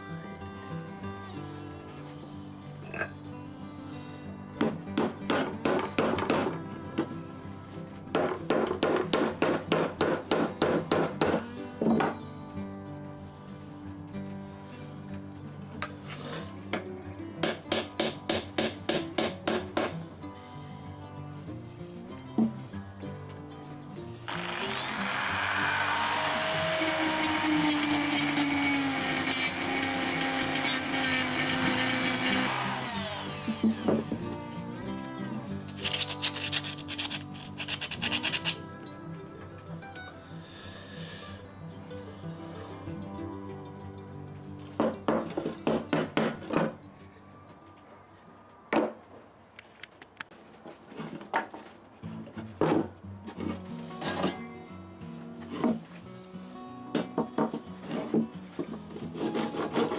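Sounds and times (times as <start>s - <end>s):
background music: 0.0s - 48.6s, 56.6s - 59.9s
power tool motor whining: 24.3s - 34.4s.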